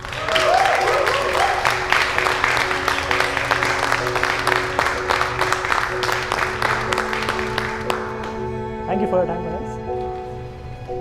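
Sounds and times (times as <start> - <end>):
people clapping: 0.0 - 8.5
background music with held notes: 0.0 - 11.0.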